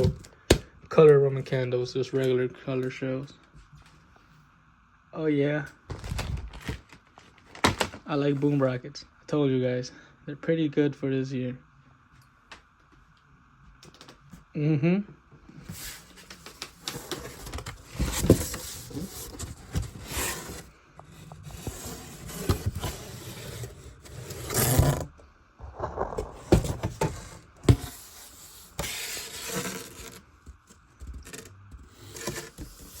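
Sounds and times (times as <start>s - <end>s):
packages scraping and rustling: 0.0s - 0.3s, 5.9s - 8.0s, 15.7s - 33.0s.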